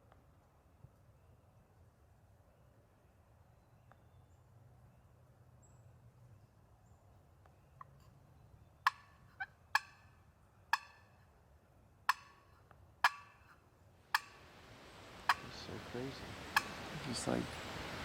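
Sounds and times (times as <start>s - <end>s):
turkey clucking: 8.8s - 10.1s, 10.7s - 11.1s, 12.1s - 18.0s.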